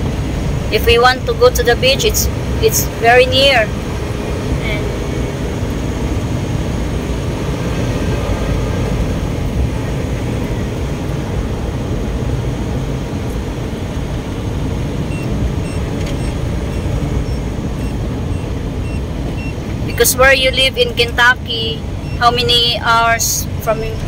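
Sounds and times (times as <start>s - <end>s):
road and engine rumble in car: 0.0s - 24.0s
quick repeating beep: 15.1s - 20.0s.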